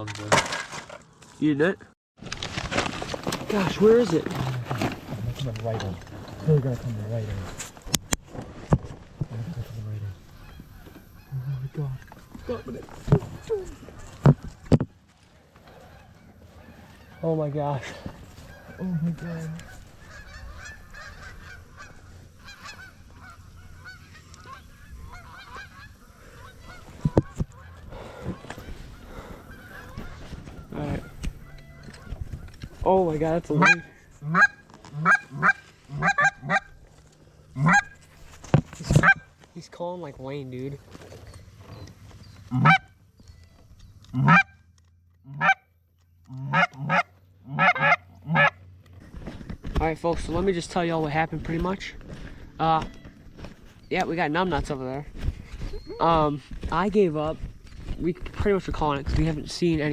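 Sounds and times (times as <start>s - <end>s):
geese honking: 9.4s - 14.8s, 15.6s - 39.4s, 40.6s - 45.7s, 46.3s - 48.7s.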